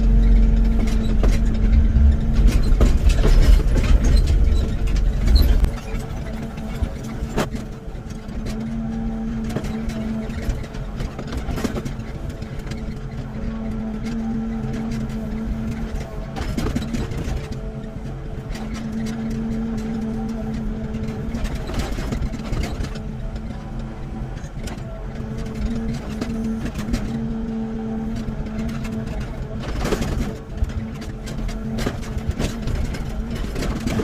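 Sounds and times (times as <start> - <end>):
excavator diesel engine: 0.0 - 34.0
machine knocks and clanks: 0.2 - 7.6.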